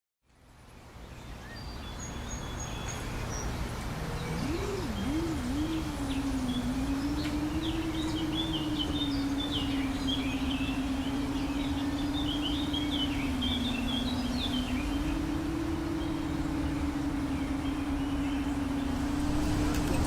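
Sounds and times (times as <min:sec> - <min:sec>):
birds chirping: 0:01.0 - 0:20.0
low rumble: 0:03.9 - 0:20.0
drone motors buzzing: 0:04.0 - 0:20.0.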